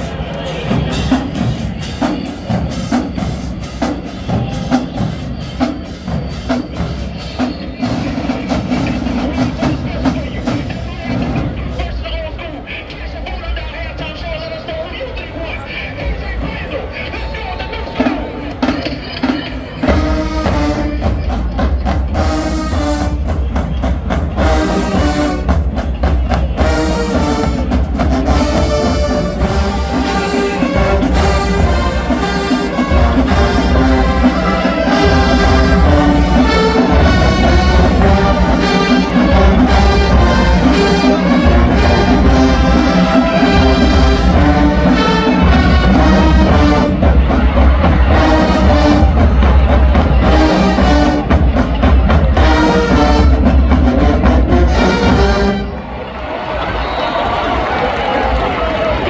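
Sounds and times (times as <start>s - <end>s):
drumline beat: 0.0s - 14.3s, 15.2s - 59.0s
marching band playing: 0.0s - 59.0s.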